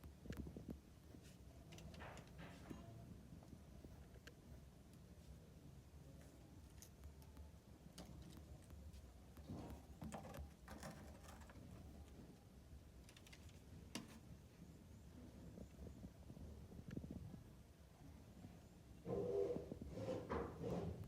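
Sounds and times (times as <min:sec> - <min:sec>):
faint clicks and knocks: 0:00.0 - 0:05.0.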